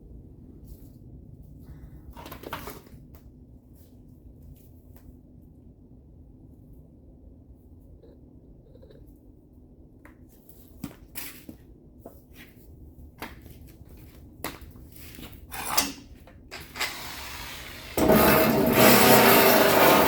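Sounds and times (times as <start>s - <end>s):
angle grinder running: 16.6s - 20.0s.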